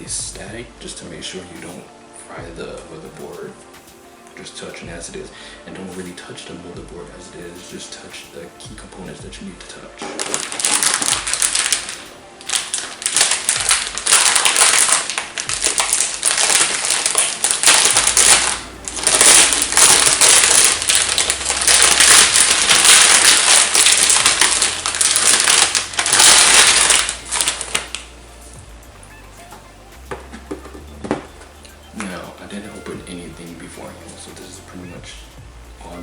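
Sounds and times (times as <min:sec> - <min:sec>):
plastic packaging crinkling: 0:10.0 - 0:35.1.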